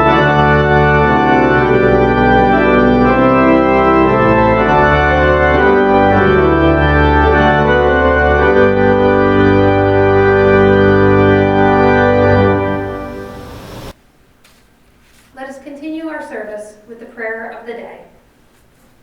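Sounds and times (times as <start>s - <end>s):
organ chords: 0.0s - 14.0s.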